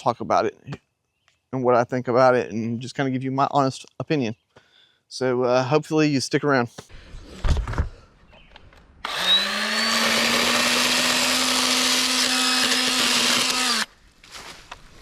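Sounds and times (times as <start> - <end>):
electric pruning saw motor: 9.0 - 13.9.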